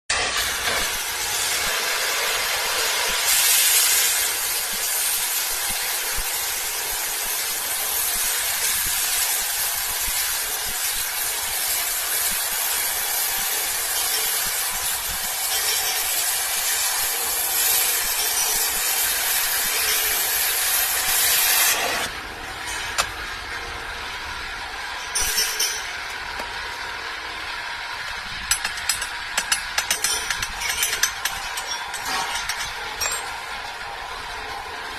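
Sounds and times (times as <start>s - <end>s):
metal-cutting tool hissing: 0.1s - 23.2s, 25.0s - 26.7s, 28.4s - 33.5s.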